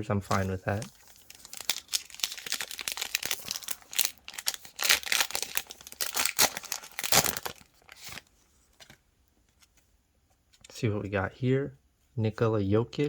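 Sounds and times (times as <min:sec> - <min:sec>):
plastic wrapper crinkling: 0:00.2 - 0:09.0.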